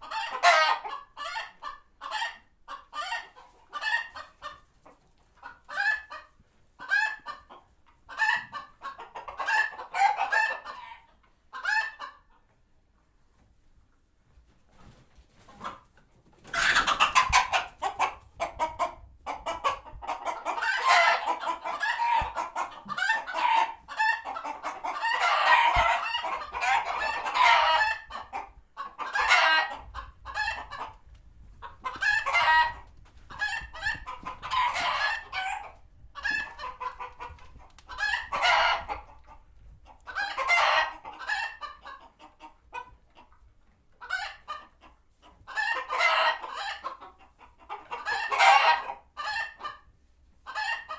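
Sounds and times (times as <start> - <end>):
chickens squawking and clucking: 0.0 - 12.6, 14.8 - 50.9.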